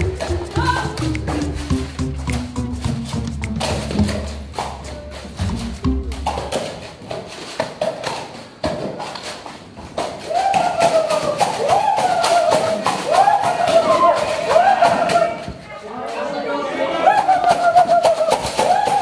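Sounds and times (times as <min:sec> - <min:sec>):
sliding held melody line: 0:00.0 - 0:06.6
tapping clicking percussion beat: 0:00.0 - 0:06.9, 0:17.4 - 0:19.0.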